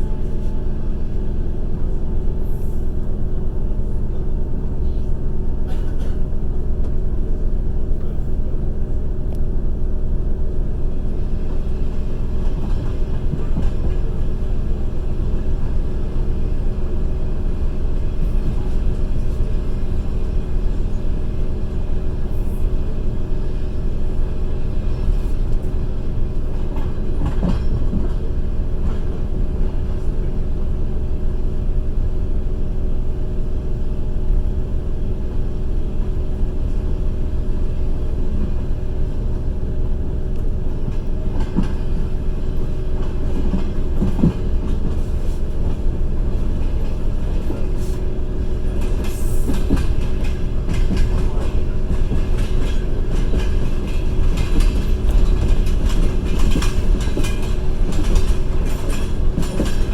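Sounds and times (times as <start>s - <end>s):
train rumble and hum: 0.0s - 59.9s
wheels clicking over rail joints: 48.6s - 59.9s.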